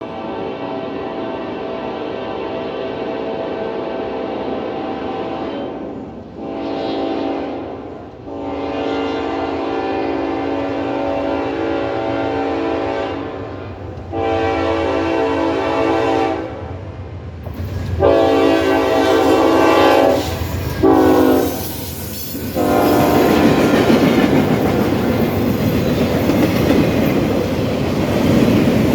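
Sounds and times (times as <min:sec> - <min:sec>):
locomotive air horn blasts: 0:00.0 - 0:16.7, 0:18.0 - 0:23.6
train wheels clacking over rails: 0:17.4 - 0:28.9.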